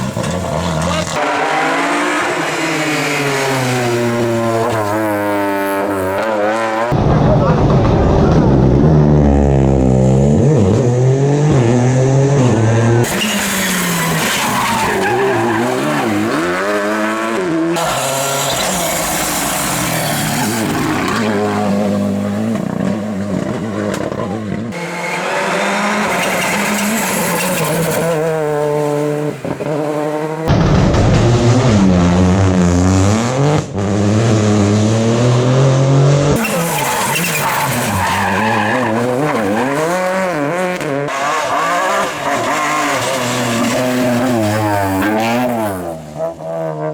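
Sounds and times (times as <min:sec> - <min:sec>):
rally car engines revving: 0:00.0 - 0:46.9
tyre squeal: 0:13.1 - 0:16.6, 0:17.7 - 0:21.6, 0:23.6 - 0:28.8, 0:36.4 - 0:40.1.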